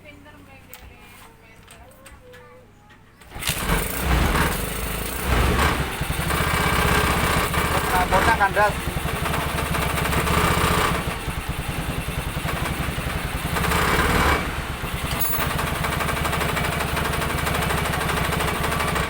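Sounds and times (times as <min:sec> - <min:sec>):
motorbike engine running and revving: 0:03.2 - 0:19.0.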